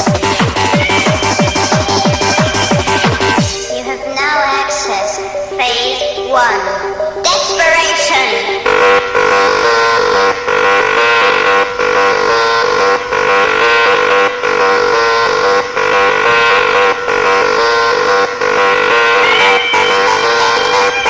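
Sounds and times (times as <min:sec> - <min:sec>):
electronic techno music: 0:00.0 - 0:21.0
buzzing synth tone: 0:08.4 - 0:21.0.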